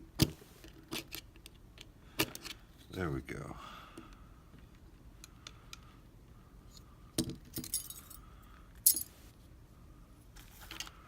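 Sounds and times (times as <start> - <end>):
keys jingling: 7.6 - 8.2.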